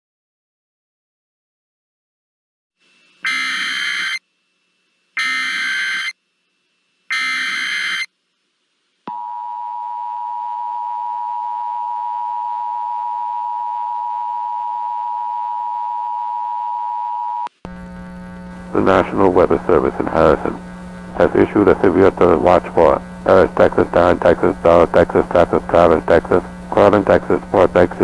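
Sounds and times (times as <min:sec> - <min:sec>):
digital data tone bursts: 0:03.2 - 0:04.2, 0:05.2 - 0:06.2, 0:07.1 - 0:08.1
two-tone attention signal: 0:03.2 - 0:04.2, 0:05.2 - 0:06.1, 0:07.1 - 0:08.1.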